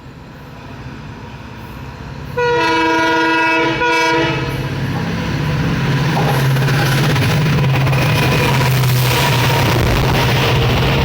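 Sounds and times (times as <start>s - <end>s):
rumble of train passing: 0.0s - 11.0s
train horn blasts: 2.4s - 4.6s.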